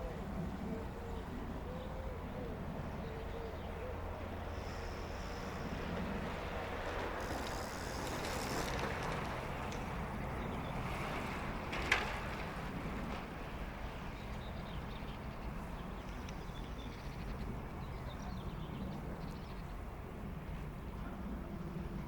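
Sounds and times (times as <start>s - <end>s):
low background rumble: 0.0s - 22.0s
faint high ticks: 6.9s - 9.9s.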